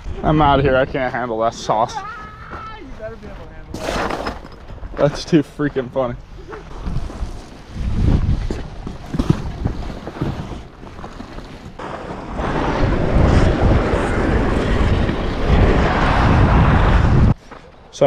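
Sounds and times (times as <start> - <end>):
wind buffeting microphone: 6.1 - 10.8, 11.7 - 17.4
plastic tarps rustling: 6.5 - 11.8.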